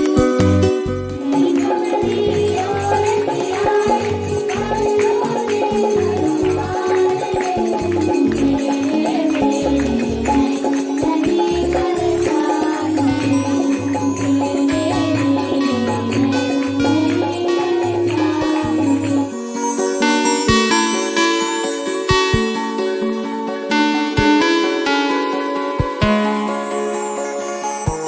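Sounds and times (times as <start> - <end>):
melody: 0.0 - 28.0
pulsing bass line: 0.4 - 19.4
shaken percussion: 1.1 - 19.9.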